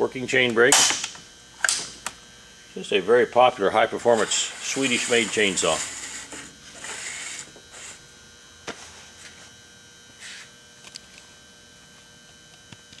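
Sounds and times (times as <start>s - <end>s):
faint electrical hum: 0.0s - 13.0s.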